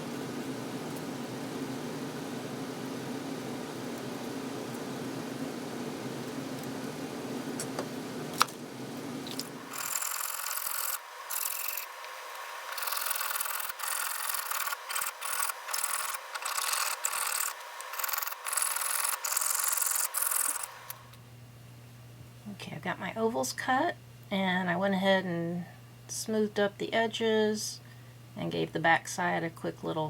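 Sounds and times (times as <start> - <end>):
file rubbing on metal: 9.7 - 20.8.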